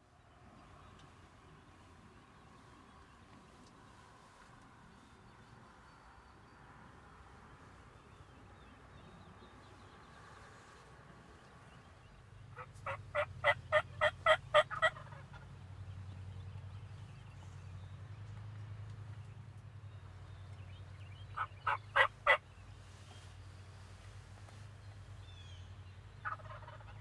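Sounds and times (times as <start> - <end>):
turkey yelping: 12.6 - 15.5, 21.4 - 22.4, 26.2 - 27.0.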